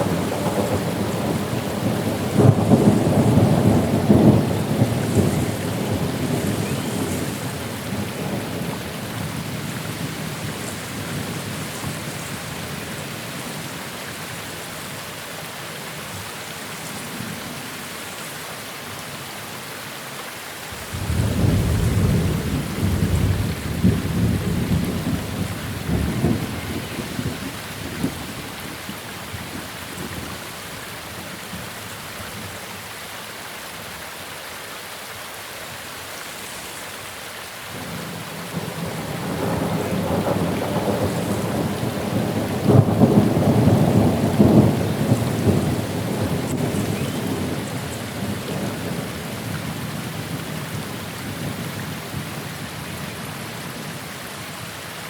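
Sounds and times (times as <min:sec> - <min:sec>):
steady rain: 0:00.0 - 0:55.0
thunder rolling: 0:20.8 - 0:28.4.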